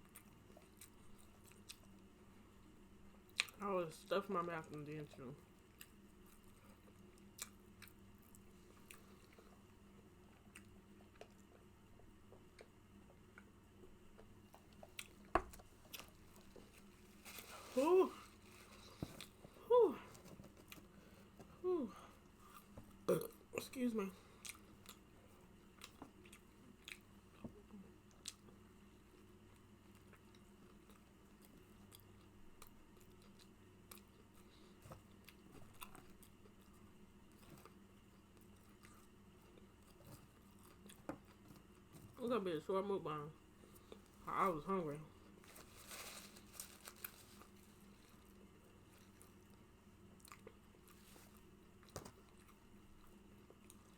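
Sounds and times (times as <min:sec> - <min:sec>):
person chewing food: 0:00.0 - 0:02.1, 0:03.2 - 0:03.6, 0:05.6 - 0:17.2, 0:24.3 - 0:42.2, 0:47.0 - 0:53.9
faint steady hum: 0:00.0 - 0:53.9
wet chewing and mouth clicks: 0:10.3 - 0:11.7, 0:14.1 - 0:16.2, 0:25.8 - 0:27.4.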